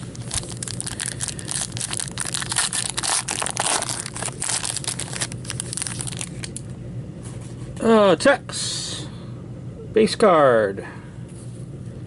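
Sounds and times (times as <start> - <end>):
foil wrapper tearing and crinkling: 0.0 - 6.6.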